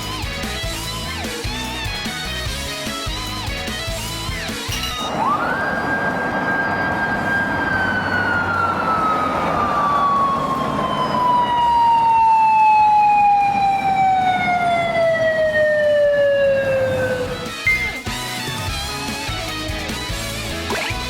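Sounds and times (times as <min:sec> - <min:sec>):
police siren wailing: 0:04.8 - 0:18.0
traffic noise: 0:05.0 - 0:17.6.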